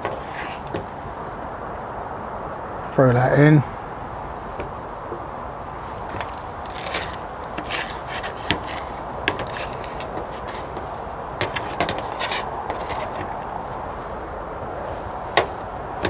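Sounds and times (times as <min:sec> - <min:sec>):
hands picking herb leaves: 0:04.2 - 0:16.0.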